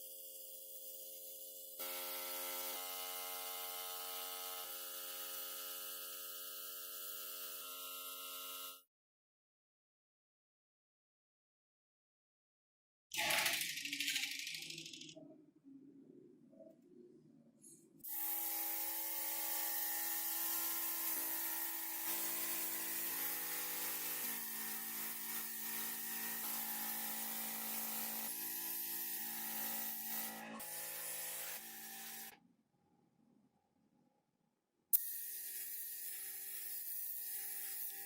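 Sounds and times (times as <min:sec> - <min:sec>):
small power tool running: 0:00.2 - 0:08.8, 0:18.0 - 0:32.4, 0:35.0 - 0:38.0.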